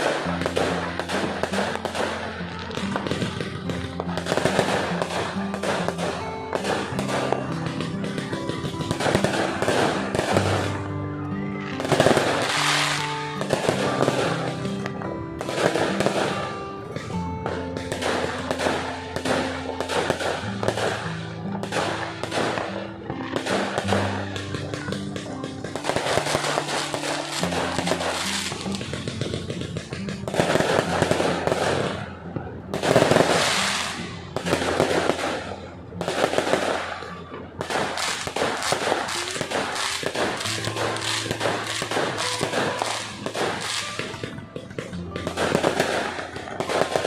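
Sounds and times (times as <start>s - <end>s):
fireworks bangs and crackles: 0.0s - 47.0s
music playing: 0.0s - 47.0s.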